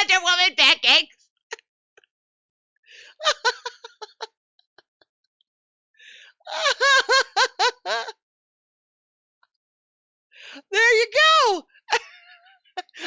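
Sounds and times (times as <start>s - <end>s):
person laughing: 6.5s - 8.2s.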